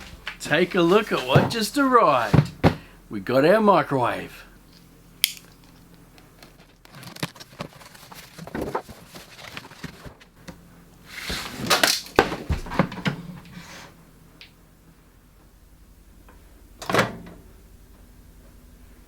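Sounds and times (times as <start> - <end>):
rustling and clunks: 0.0 - 2.9, 5.5 - 10.6, 11.2 - 13.6.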